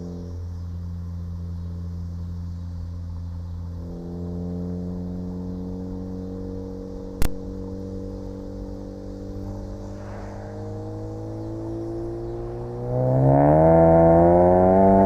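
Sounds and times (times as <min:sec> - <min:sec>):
car engine running at low revs: 0:00.0 - 0:15.0
sharp exhaust pop: 0:07.2 - 0:07.6.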